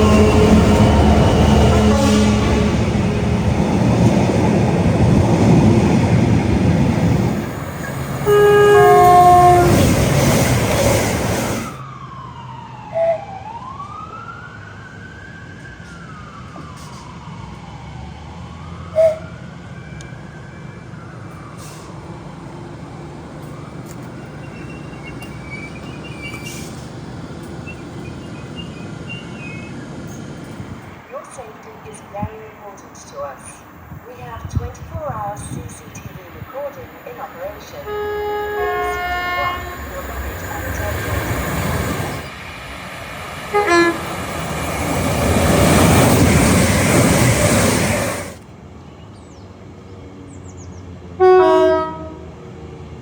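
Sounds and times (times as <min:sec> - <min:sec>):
train horn blast: 0:00.0 - 0:03.6, 0:08.2 - 0:10.0, 0:37.7 - 0:41.2, 0:43.5 - 0:44.1, 0:51.2 - 0:52.4
siren wailing: 0:00.0 - 0:03.8, 0:11.6 - 0:21.6, 0:36.9 - 0:42.3
train passing at speed: 0:00.0 - 0:13.3, 0:21.0 - 0:53.0.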